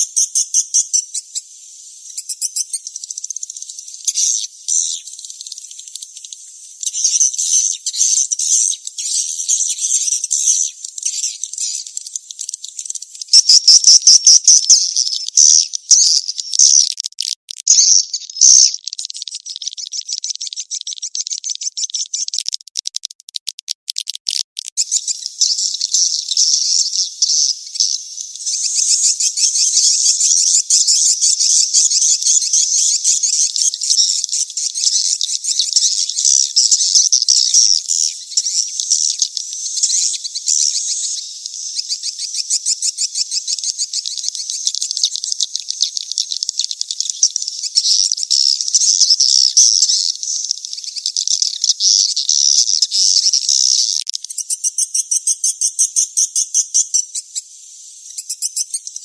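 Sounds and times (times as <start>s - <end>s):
runs of clicks: 22.3s - 24.8s.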